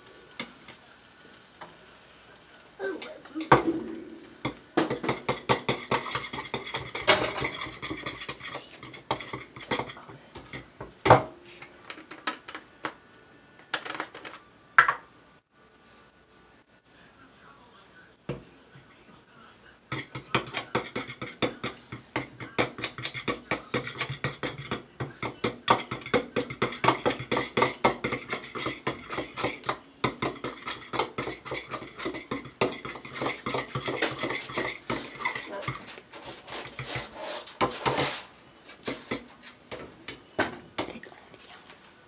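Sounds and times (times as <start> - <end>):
metal utensil beating eggs in dish: 3.4 - 10.7, 19.9 - 39.3.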